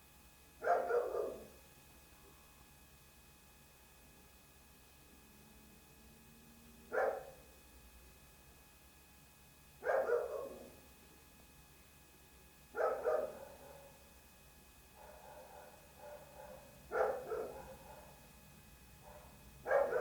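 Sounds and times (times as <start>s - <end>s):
dog barking: 0.6s - 1.6s, 6.9s - 7.5s, 9.8s - 10.8s, 12.8s - 14.0s, 15.0s - 18.3s, 19.0s - 20.0s.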